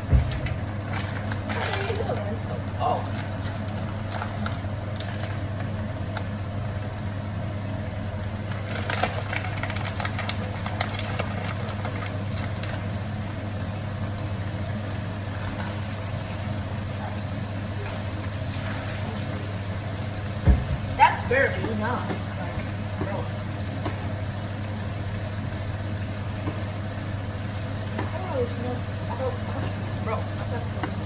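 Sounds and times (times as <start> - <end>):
low electrical hum: 0.0 - 31.0
onions hissing in a pan: 11.6 - 31.0.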